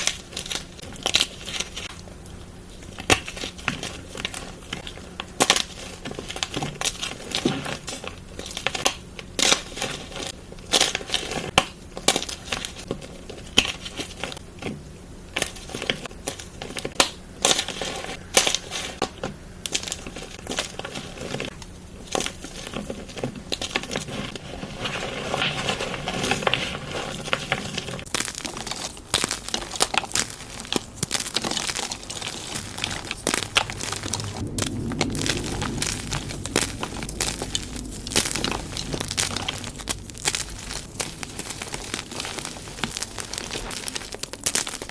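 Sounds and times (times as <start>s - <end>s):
chalk being crushed and crumbled: 15.4s - 44.9s.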